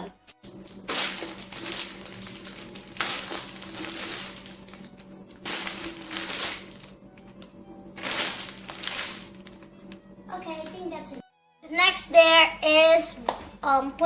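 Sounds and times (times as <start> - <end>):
faint steady hum: 0.2 - 14.0
foam toy crushing and crinkling: 0.5 - 7.0, 8.0 - 9.6.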